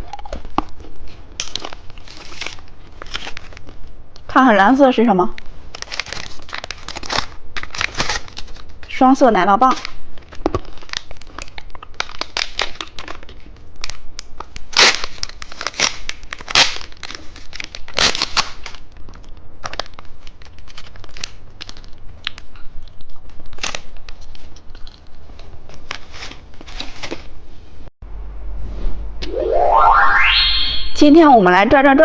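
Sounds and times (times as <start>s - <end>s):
candy wrappers crinkling: 0.1s - 3.9s, 5.7s - 9.0s, 9.6s - 27.3s.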